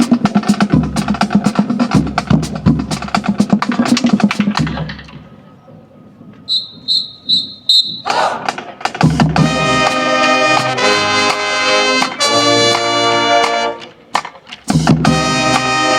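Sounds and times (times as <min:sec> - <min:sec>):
drumline playing snare and drums: 0:00.0 - 0:05.1, 0:07.9 - 0:15.9
high whistle blasts: 0:06.5 - 0:08.2.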